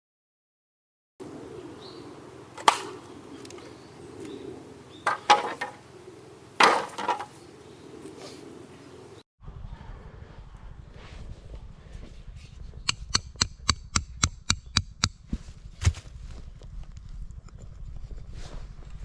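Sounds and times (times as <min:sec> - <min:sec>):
wood being chopped: 0:06.6 - 0:07.2, 0:15.8 - 0:16.1.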